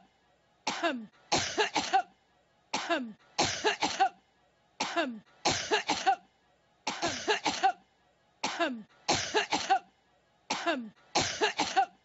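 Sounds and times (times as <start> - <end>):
woman coughing: 0.7 - 2.1, 2.8 - 4.2, 4.8 - 6.2, 6.9 - 7.8, 8.4 - 9.9, 10.5 - 12.0.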